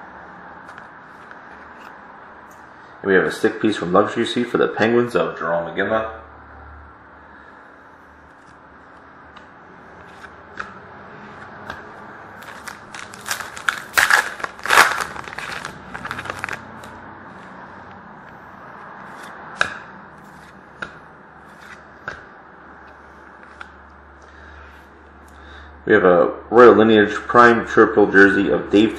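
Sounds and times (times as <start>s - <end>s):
cards clicking and tapping: 8.3s - 17.0s, 19.1s - 22.3s
wrapper tearing and crinkling: 12.4s - 17.0s.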